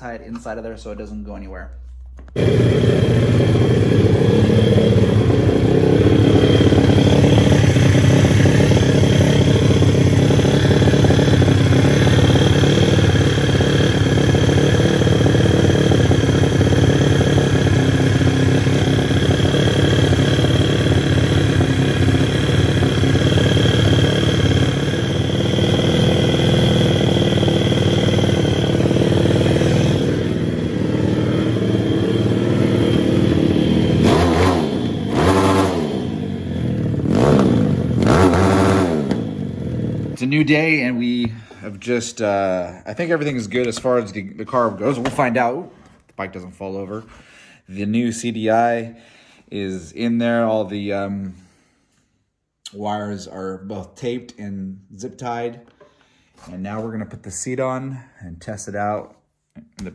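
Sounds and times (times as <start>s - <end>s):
pit bike engine running: 2.2s - 41.6s.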